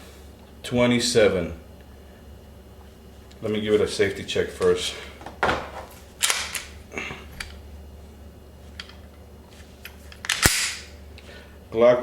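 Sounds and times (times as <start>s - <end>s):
pistol slide metallic clacks: 10.1s - 10.9s.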